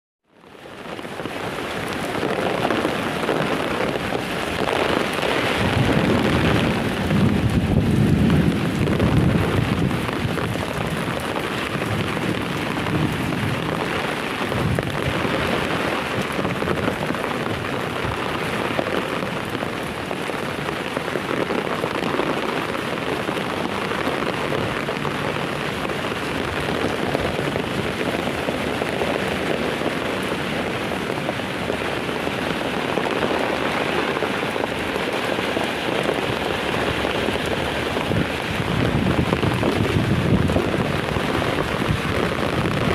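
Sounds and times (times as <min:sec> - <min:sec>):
heavy rain pouring: 0:00.3 - 0:42.9
deep rumble: 0:05.6 - 0:11.0.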